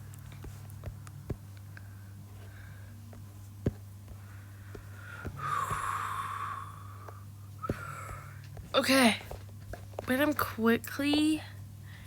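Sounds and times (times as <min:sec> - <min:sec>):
low steady hum: 0:00.0 - 0:12.0
person breathing out: 0:04.2 - 0:08.4.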